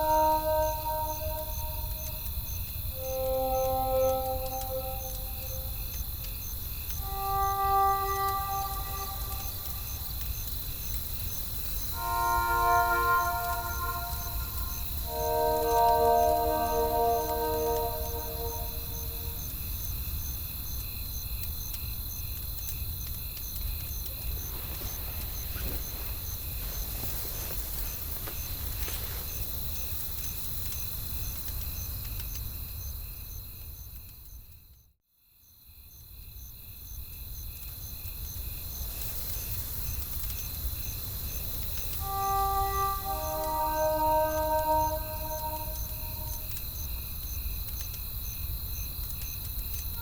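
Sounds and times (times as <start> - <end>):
pulsing high chirping: 0.0 - 2.2, 3.0 - 5.8, 7.0 - 10.0, 12.0 - 19.4, 42.0 - 46.5.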